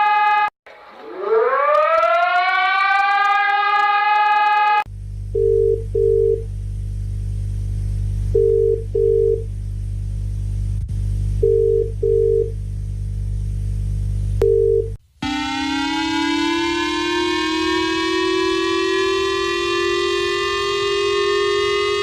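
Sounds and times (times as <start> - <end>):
steady low hum: 4.9 - 22.0.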